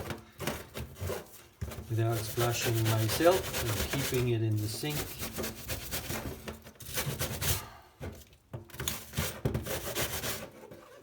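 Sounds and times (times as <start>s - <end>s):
brush scrubbing metal part: 2.0s - 6.2s.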